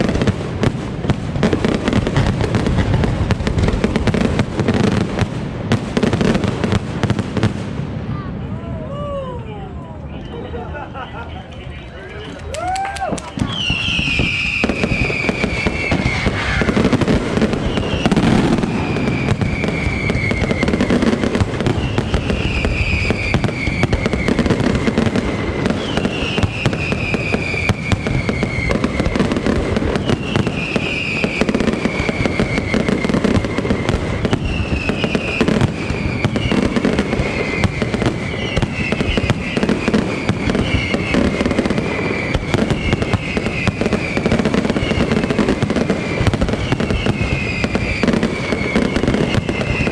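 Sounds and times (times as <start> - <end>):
firework bangs and crackling: 0.0 - 49.9
falling firework whistle: 12.6 - 49.9.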